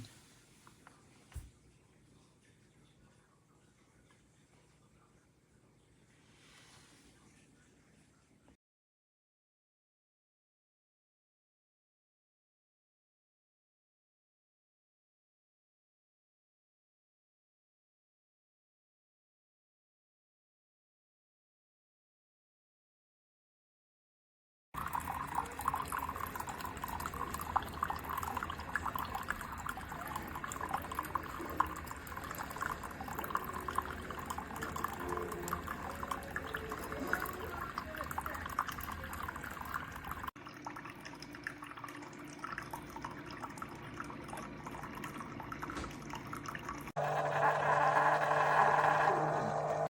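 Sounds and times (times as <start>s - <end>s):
coffee maker dispensing water: 24.8s - 49.9s.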